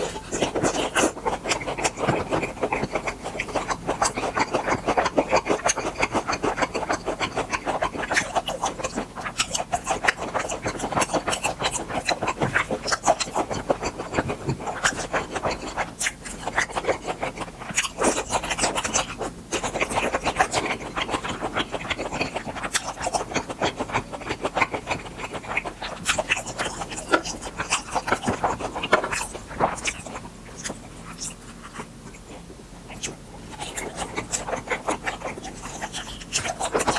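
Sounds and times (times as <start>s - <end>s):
wet chewing and mouth smacks: 0.0s - 36.9s.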